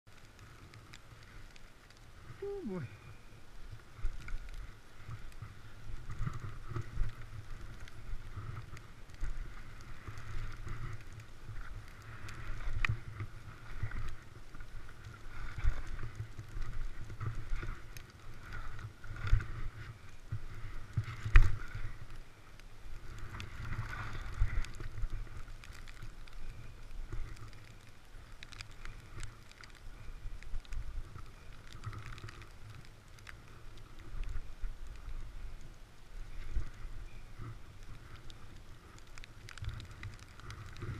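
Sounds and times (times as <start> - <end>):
wind rumble on microphone: 0.2 - 40.9
skis scraping over snow: 3.8 - 30.1.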